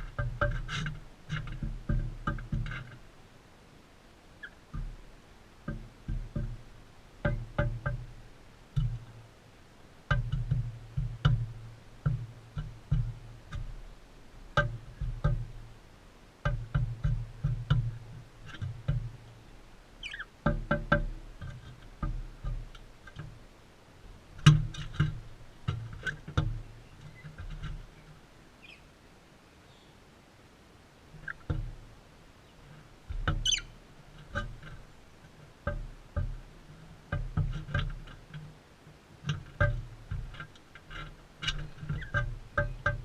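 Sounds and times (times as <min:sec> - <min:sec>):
birds knocking and tapping: 0:00.0 - 0:03.1, 0:04.4 - 0:09.3, 0:10.0 - 0:15.8, 0:16.4 - 0:23.4, 0:24.2 - 0:28.2, 0:31.1 - 0:43.0
short high bird chirp: 0:20.0 - 0:20.3, 0:33.4 - 0:33.7.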